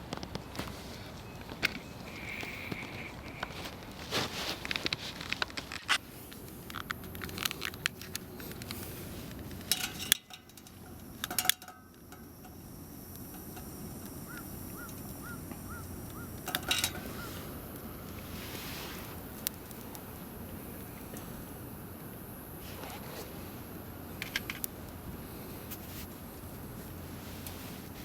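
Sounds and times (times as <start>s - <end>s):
low background noise: 0.0s - 28.0s
metallic clinks and crackles: 0.1s - 15.1s, 16.4s - 17.4s.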